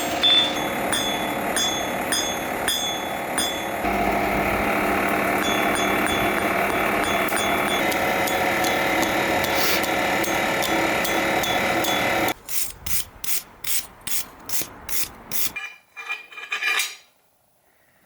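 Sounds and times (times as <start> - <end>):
hand file scraping steel blade: 9.4 - 10.0
scraping with ringing tones: 15.5 - 17.1.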